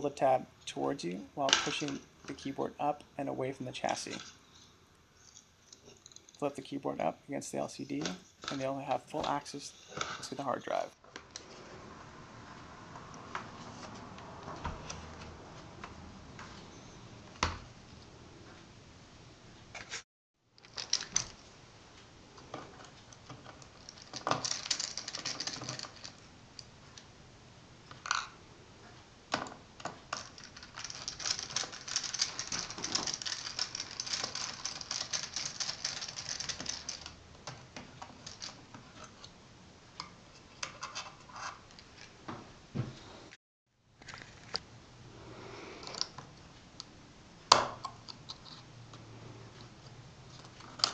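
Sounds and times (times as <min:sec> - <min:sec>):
fast scratchy clicking: 0:30.2 - 0:37.2.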